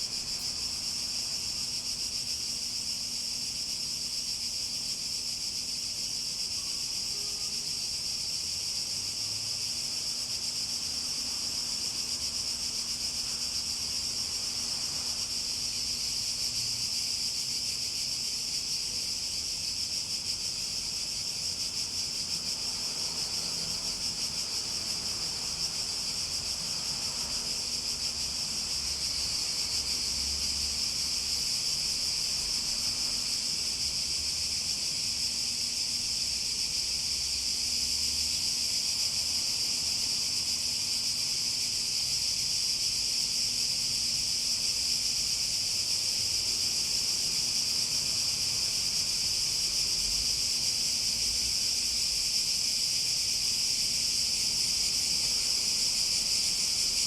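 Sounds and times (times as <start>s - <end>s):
cicadas buzzing: 0.0s - 57.0s.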